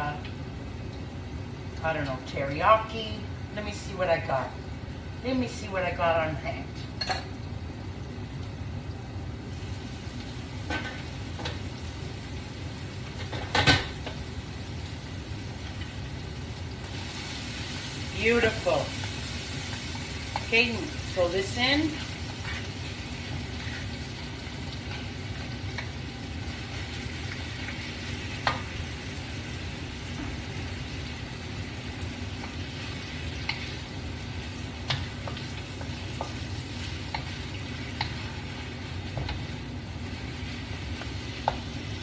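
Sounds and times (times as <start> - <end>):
food sizzling in a pan: 0.0 - 42.0.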